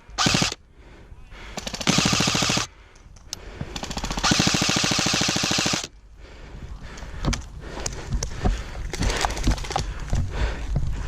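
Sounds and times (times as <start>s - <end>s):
airsoft gun firing bursts: 0.2s - 0.6s, 1.6s - 2.7s, 3.7s - 5.9s.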